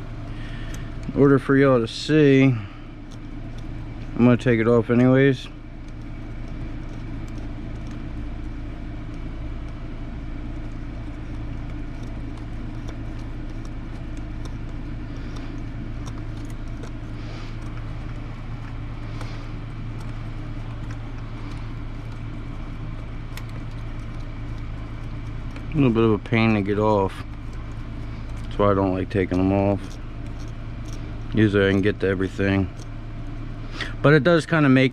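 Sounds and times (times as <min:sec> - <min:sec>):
steady low hum: 0:00.0 - 0:34.9
hand tools clicking and tapping: 0:10.5 - 0:32.9.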